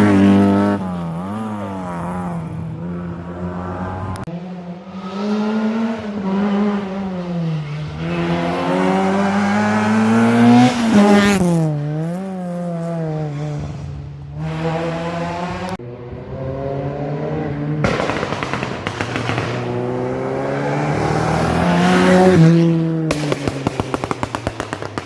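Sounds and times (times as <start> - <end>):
rally car engine at full throttle: 0.0 - 25.0.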